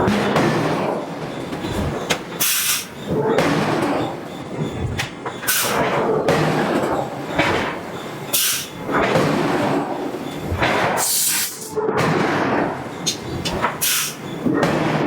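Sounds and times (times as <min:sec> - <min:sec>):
forging hammer hissing blast: 0:08.3 - 0:08.8, 0:11.0 - 0:11.6, 0:13.8 - 0:14.2.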